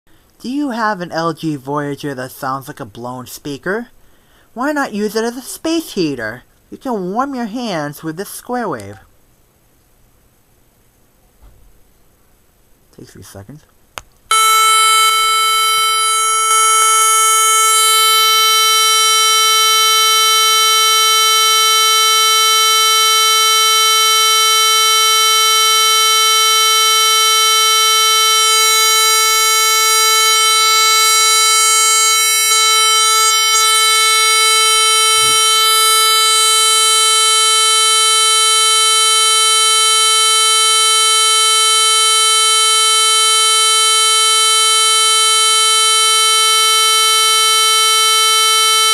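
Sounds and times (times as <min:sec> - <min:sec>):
distorted buzzy test tone: 0:14.3 - 0:48.9.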